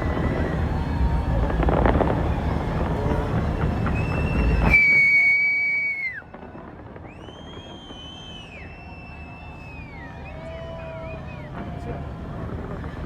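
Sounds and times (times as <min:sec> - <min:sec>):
high falling whistle: 0:00.0 - 0:11.7
fireworks rumbling: 0:00.0 - 0:13.0.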